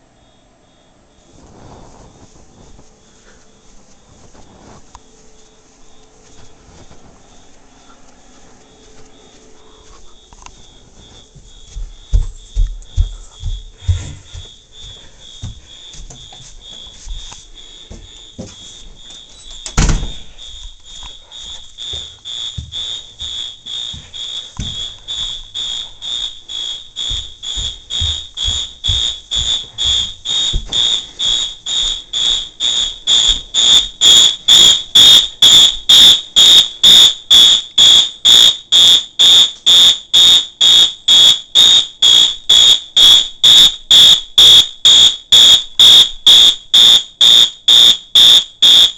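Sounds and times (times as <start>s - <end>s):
pulsing fire alarm horn: 15.7s - 48.9s
loud thump: 19.8s - 20.2s.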